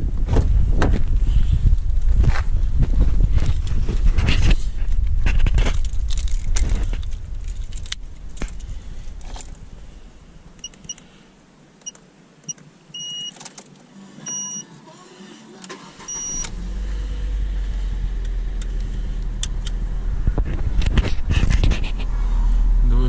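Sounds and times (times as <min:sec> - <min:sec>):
car dashboard chimes and beeps: 0:10.6 - 0:11.0, 0:11.8 - 0:13.4, 0:14.3 - 0:14.6, 0:15.7 - 0:16.5
car engine starting and idling: 0:13.3 - 0:23.0.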